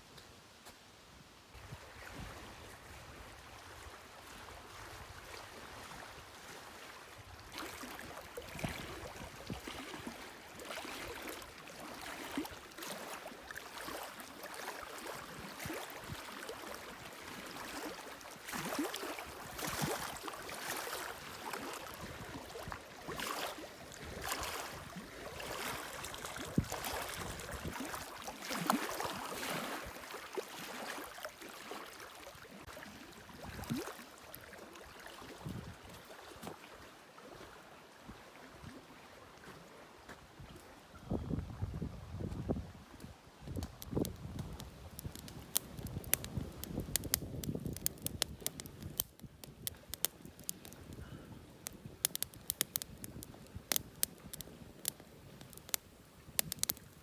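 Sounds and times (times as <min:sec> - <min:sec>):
running water splashing and rushing: 0:01.8 - 0:37.7.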